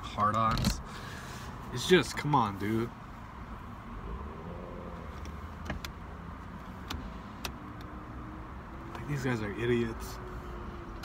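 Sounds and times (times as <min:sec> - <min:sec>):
car cabin rumble: 0:00.1 - 0:00.9.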